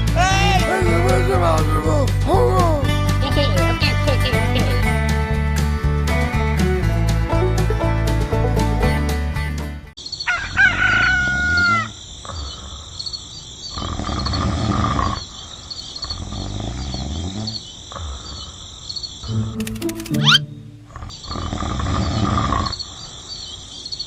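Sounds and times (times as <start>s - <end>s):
long pitched animal call: 10.3s - 12.0s
quick rising whistle: 19.6s - 20.6s.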